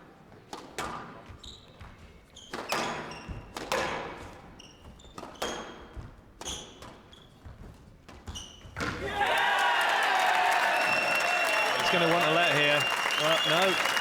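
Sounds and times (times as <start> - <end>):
shoes squeaking on court: 1.2 - 9.0
squash ball smacks: 2.6 - 4.2.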